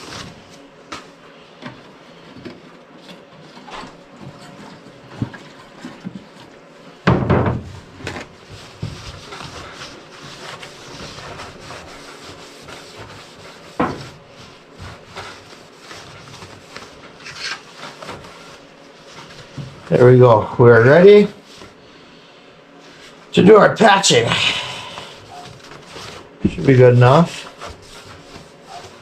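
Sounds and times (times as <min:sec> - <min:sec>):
rag rubbing on car hood: 0:08.4 - 0:19.6, 0:25.2 - 0:29.0.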